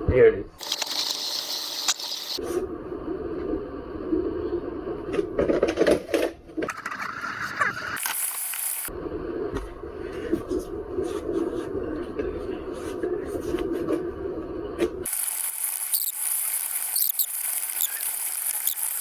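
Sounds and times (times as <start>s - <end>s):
tape rubbing and squeaking: 0.6s - 2.4s, 15.1s - 19.0s.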